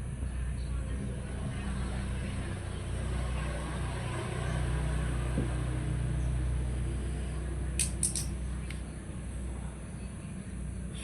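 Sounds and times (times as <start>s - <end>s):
steady low hum: 0.0s - 11.0s
sharp clicks: 7.8s - 8.8s.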